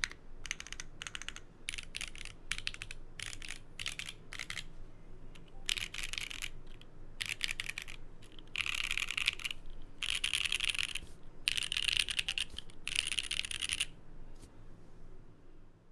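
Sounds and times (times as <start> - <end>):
mechanical keyboard key presses: 0.0 - 4.6.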